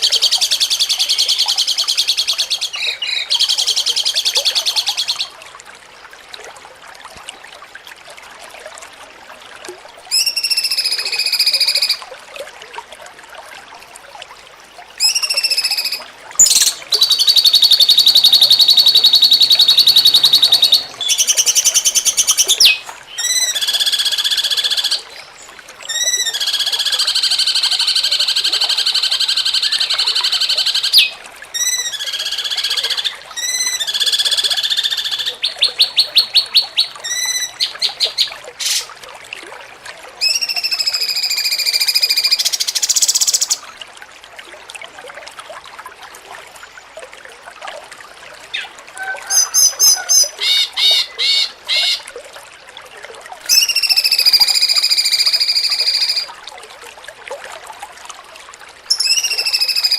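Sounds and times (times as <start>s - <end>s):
songbird trilling: 2.3s - 3.8s, 15.0s - 25.3s, 29.7s - 38.9s, 49.0s - 52.0s, 58.9s - 59.9s.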